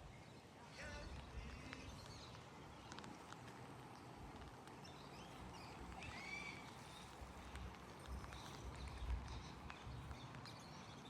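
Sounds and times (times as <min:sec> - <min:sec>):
faint background noise: 0:00.0 - 0:11.0
faint bird calls: 0:04.8 - 0:11.0.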